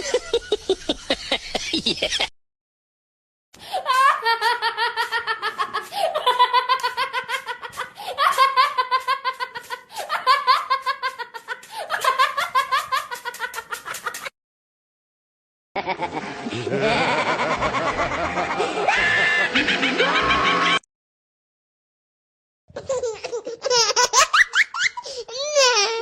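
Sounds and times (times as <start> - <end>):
high-pitched voice laughing: 15.8 - 20.8.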